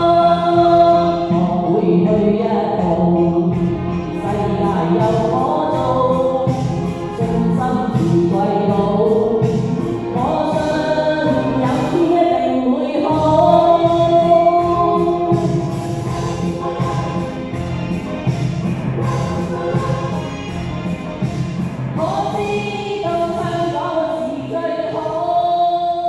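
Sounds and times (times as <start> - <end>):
karaoke backing music: 0.0 - 26.0
choir-like voices: 7.2 - 26.0.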